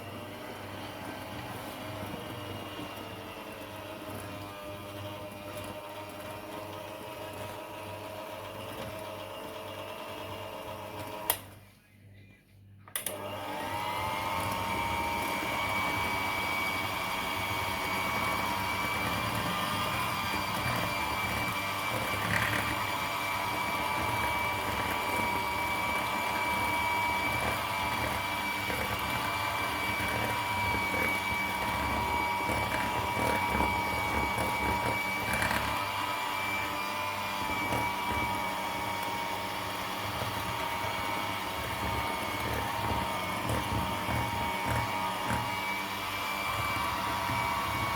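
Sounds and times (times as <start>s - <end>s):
electric mixer motor whine: 0.0s - 11.5s, 13.1s - 47.9s
mixer switch click: 12.9s - 13.2s.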